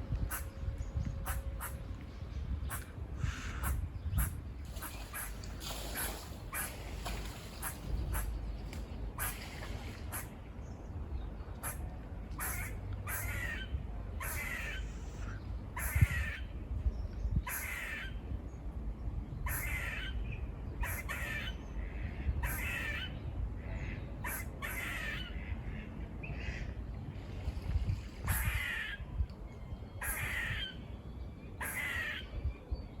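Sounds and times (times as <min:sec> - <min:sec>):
squirrel barking alarm calls: 0:00.3 - 0:00.5, 0:01.2 - 0:01.8, 0:12.4 - 0:15.0, 0:15.8 - 0:16.5, 0:17.4 - 0:18.2, 0:19.4 - 0:20.2, 0:22.4 - 0:23.2, 0:24.2 - 0:25.4, 0:30.0 - 0:30.8, 0:31.6 - 0:32.3.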